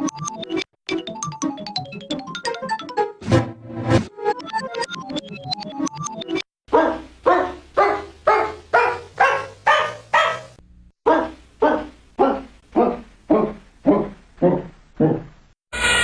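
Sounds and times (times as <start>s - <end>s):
cartoon dog barking: 6.7s - 15.3s.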